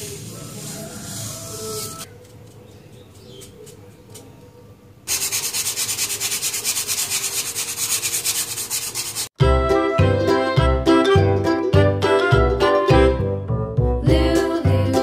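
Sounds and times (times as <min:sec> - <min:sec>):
rhythmic scraping strokes: 0:00.0 - 0:02.1, 0:05.1 - 0:09.4.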